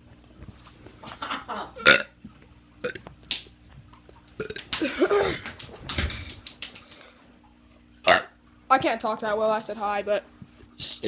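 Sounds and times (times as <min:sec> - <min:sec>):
teenager burping: 0:01.8 - 0:02.2, 0:04.4 - 0:05.4, 0:08.0 - 0:08.4.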